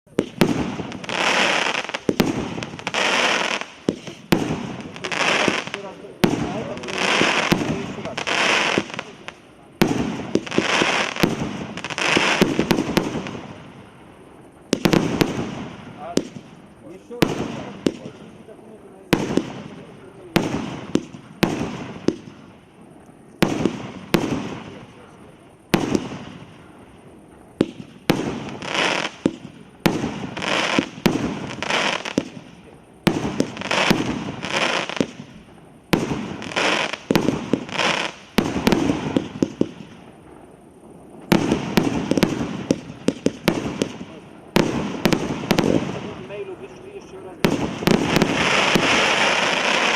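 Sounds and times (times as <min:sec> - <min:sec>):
fireworks launching and bursting: 0:00.0 - 0:49.9
rapid crackling pops: 0:41.2 - 0:49.9.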